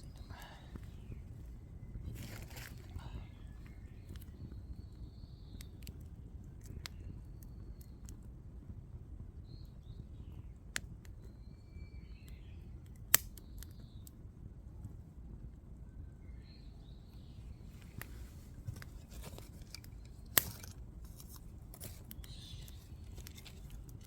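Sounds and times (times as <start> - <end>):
birds chirping: 0.0 - 5.9, 16.3 - 24.0
low outdoor rumble: 0.0 - 11.5, 12.2 - 24.0.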